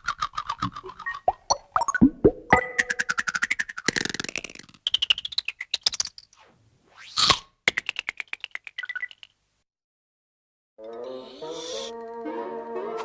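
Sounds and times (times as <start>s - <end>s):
fast rattling clicks: 0.0s - 1.3s.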